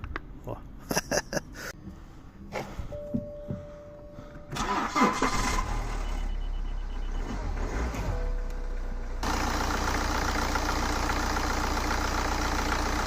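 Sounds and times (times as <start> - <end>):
diesel engine idling: 3.6 - 13.0.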